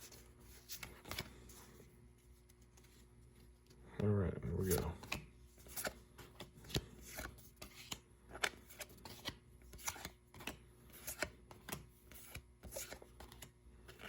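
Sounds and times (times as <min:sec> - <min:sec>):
trading cards swishing and tapping: 0:04.5 - 0:14.0.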